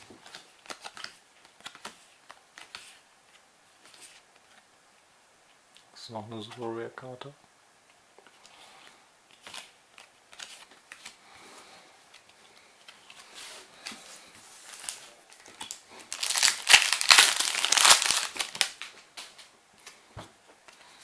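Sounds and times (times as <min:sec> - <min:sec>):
foil wrapper crinkling: 0:14.6 - 0:18.9.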